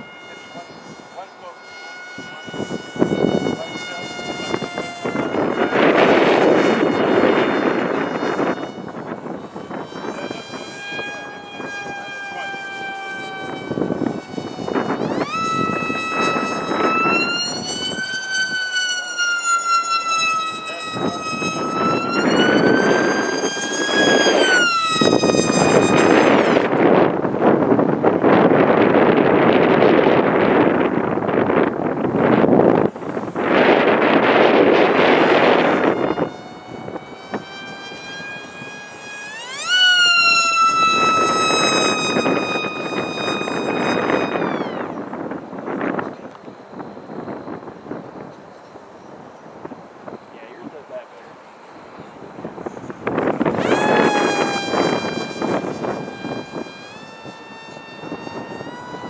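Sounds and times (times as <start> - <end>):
model aircraft motor whining: 0.0 - 59.0
wind buffeting microphone: 0.0 - 59.0.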